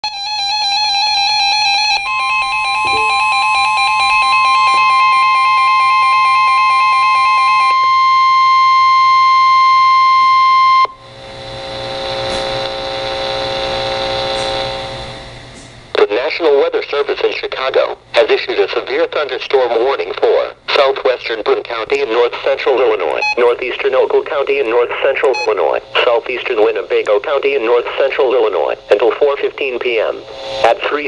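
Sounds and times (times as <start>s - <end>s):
steady alarm tone: 0.0s - 12.3s
warbling electronic beeps: 2.1s - 5.6s
radio static hiss: 11.1s - 15.3s, 15.9s - 31.0s.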